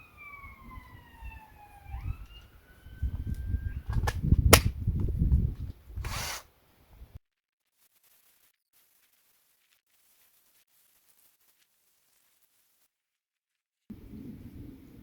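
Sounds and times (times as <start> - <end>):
sharp knocks of saw teeth: 3.9 - 4.7.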